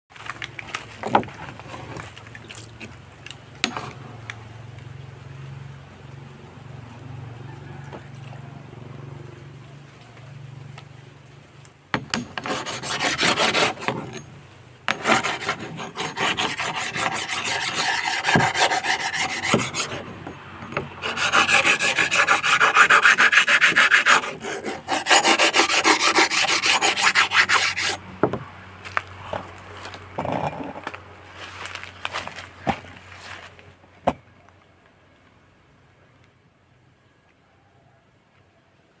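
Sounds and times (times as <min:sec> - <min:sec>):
machete blade scraping on sharpener: 0:12.2 - 0:14.3, 0:14.9 - 0:28.0.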